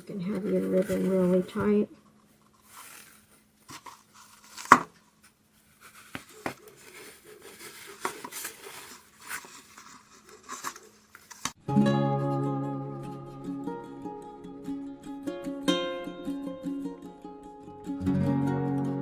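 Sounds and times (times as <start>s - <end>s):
ribbon rustling and scraping: 0.0s - 11.6s.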